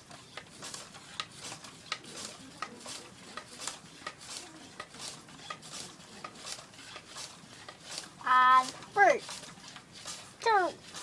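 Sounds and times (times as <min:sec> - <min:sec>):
air and water spurting: 0:05.0 - 0:11.0.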